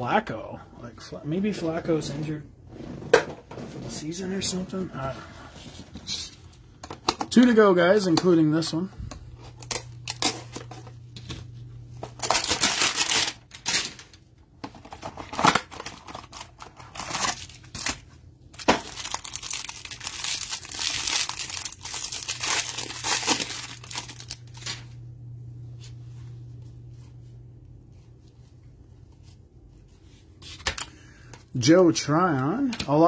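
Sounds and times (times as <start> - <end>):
faint steady hum: 0.0 - 33.0
packaging tearing and crinkling: 9.5 - 10.8, 12.1 - 14.2, 15.0 - 24.8.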